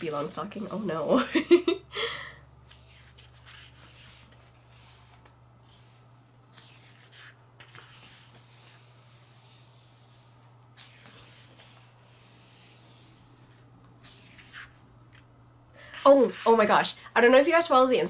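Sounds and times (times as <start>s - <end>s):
steady low hum: 0.0s - 18.0s
paper pages rustling: 2.7s - 16.9s.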